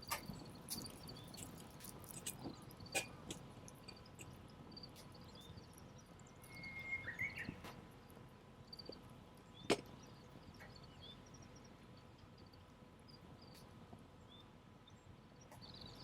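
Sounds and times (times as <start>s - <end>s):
campfire crackling and popping: 0.0s - 5.2s.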